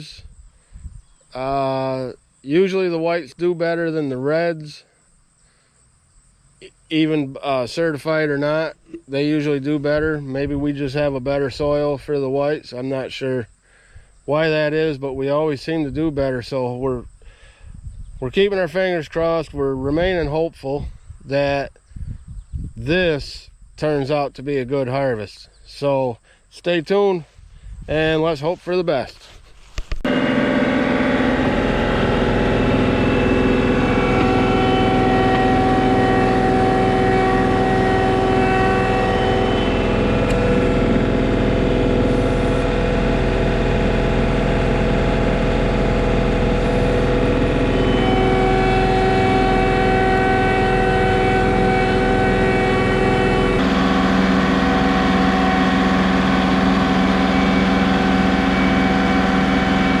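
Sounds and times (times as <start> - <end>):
tractor diesel engine running: 30.0 - 60.0.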